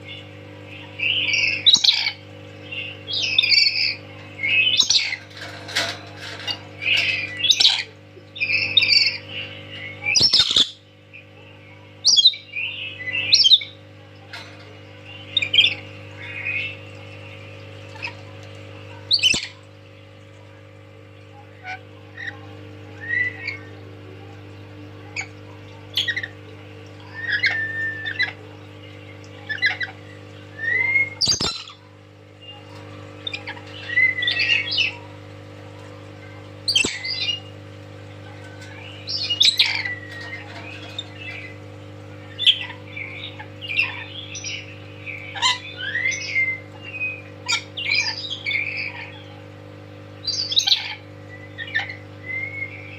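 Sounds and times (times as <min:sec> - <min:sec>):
steady low hum: 0:00.0 - 0:52.9
parrot squawking and whistling: 0:27.1 - 0:28.4, 0:29.5 - 0:31.8, 0:38.5 - 0:41.6, 0:45.3 - 0:49.2, 0:50.3 - 0:52.9.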